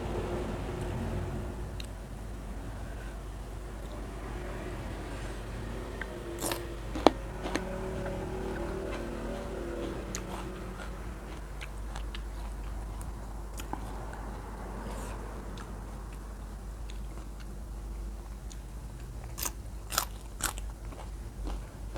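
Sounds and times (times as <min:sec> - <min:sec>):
low background hum: 0:00.0 - 0:21.9
chewing with clicks and crunches: 0:05.9 - 0:21.9.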